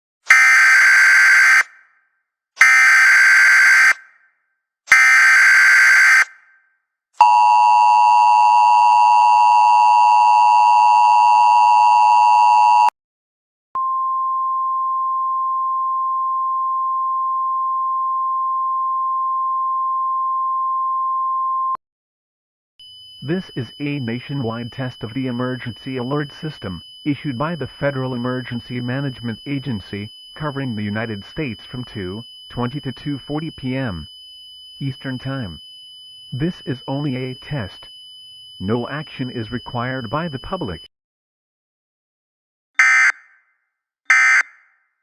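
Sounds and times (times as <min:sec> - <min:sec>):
two-tone attention signal: 0:42.8 - 0:43.2.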